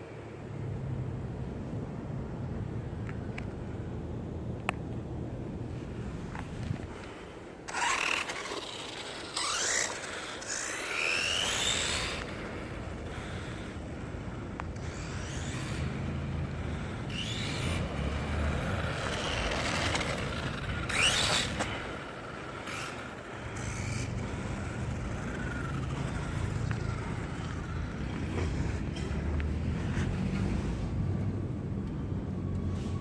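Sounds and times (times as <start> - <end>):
rc car motor whine: 7.6 - 30.6.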